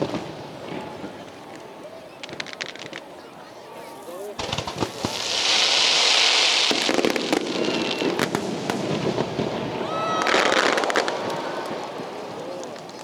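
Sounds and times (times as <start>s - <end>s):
firework crackling pops: 0.0s - 13.0s
firework hissing burst: 4.4s - 12.6s
firework whistle: 4.4s - 13.0s.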